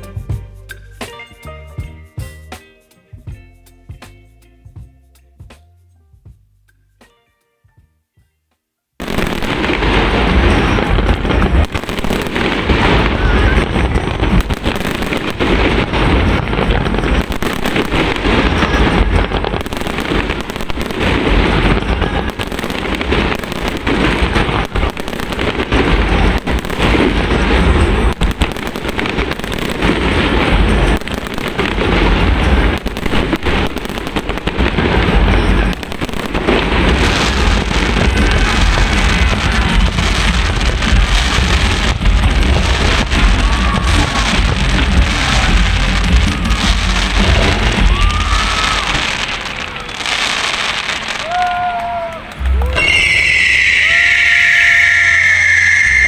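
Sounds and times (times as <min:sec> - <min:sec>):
fireworks bangs and crackling: 0:09.0 - 0:56.0
heavy low booms: 0:09.2 - 0:17.3, 0:31.6 - 0:49.0.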